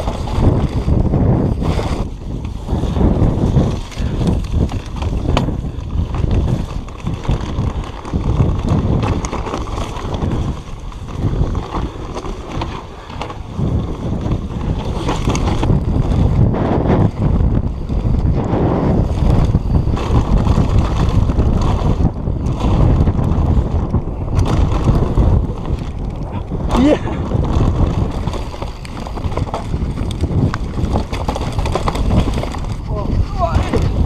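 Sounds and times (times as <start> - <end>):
bike knocking over bumps: 0.0 - 18.4, 19.0 - 34.0
bike tyre noise: 0.0 - 34.0
wind buffeting microphone: 0.0 - 34.0.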